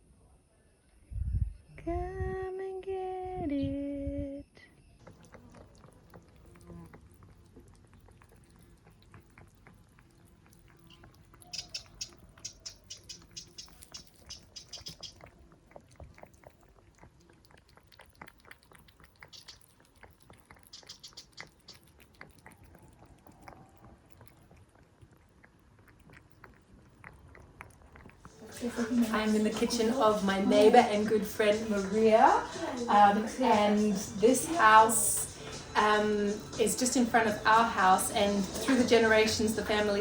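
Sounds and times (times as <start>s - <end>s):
cats crunching food: 5.0s - 34.6s.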